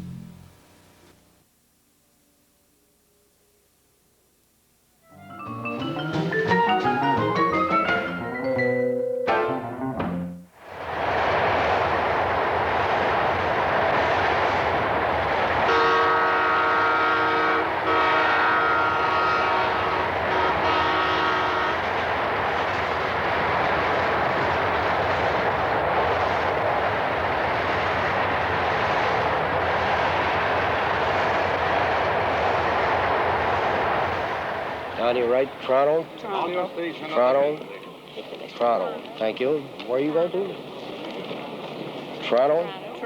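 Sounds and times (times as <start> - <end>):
steam locomotive running: 10.5 - 43.0.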